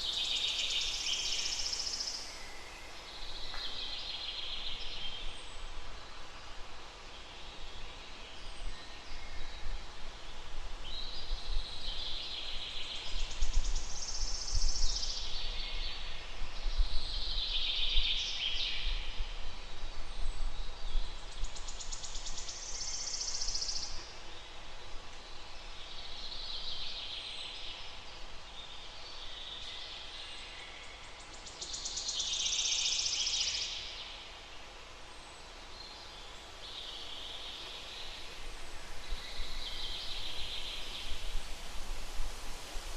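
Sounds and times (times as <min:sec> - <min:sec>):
outdoor hiss: 0:00.0 - 0:05.1, 0:34.7 - 0:42.9.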